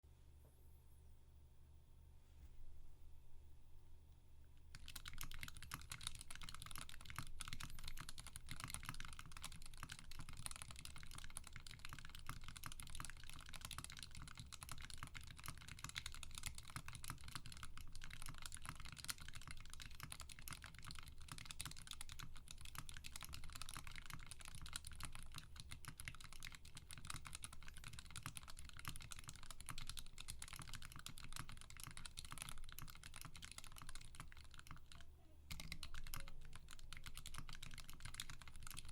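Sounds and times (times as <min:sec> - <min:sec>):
mechanical keyboard typing: 0:04.7 - 0:38.9.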